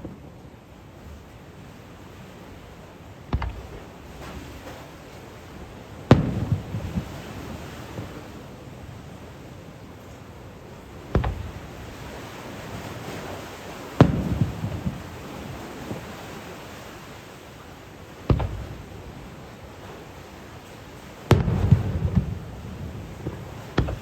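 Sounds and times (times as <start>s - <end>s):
firework shells booming: 3.3s - 4.8s, 6.0s - 8.3s, 11.1s - 16.1s, 18.2s - 20.0s, 21.2s - 24.0s
small firework pops: 3.3s - 4.8s, 6.1s - 7.1s, 11.1s - 11.9s, 14.0s - 15.1s, 18.3s - 19.0s, 21.2s - 22.5s, 23.2s - 24.0s.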